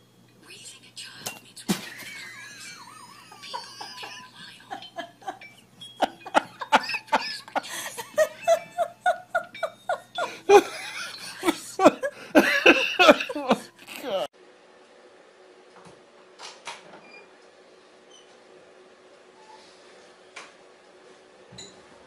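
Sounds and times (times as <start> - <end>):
people laughing: 1.8 - 14.3.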